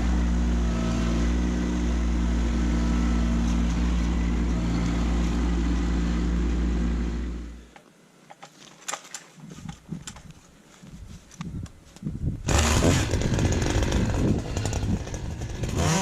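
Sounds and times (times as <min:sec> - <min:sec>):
tractor diesel engine running: 0:00.0 - 0:07.6, 0:12.5 - 0:16.0.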